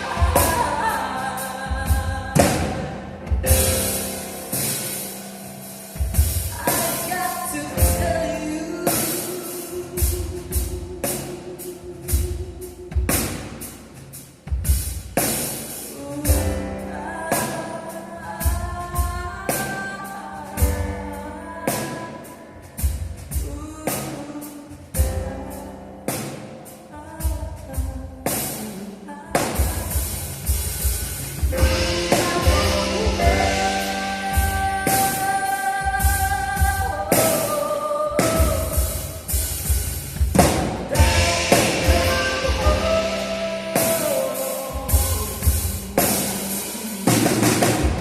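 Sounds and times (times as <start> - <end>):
person singing: 0.0 - 5.3, 6.5 - 13.1, 31.5 - 39.1, 40.8 - 48.0
piano chords: 0.0 - 13.1, 16.3 - 23.7, 31.1 - 48.0
drum kit strikes: 0.0 - 28.8, 29.4 - 48.0.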